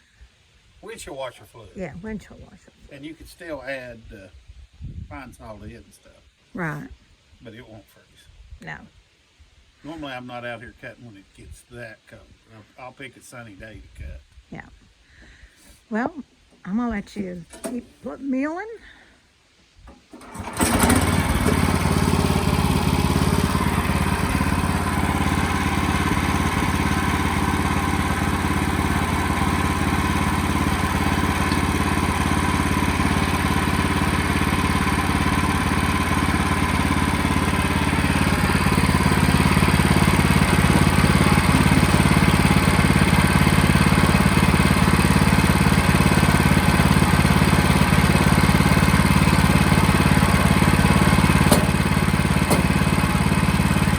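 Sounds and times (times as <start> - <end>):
sawmill engine running under load: 20.2 - 53.9.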